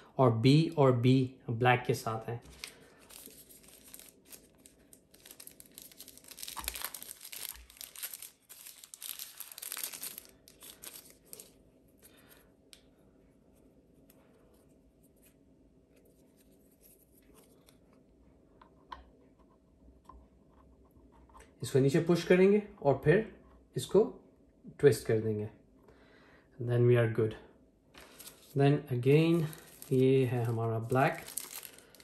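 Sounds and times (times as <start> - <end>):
packaging rustling and crinkling: 2.4 - 11.6, 28.0 - 32.0.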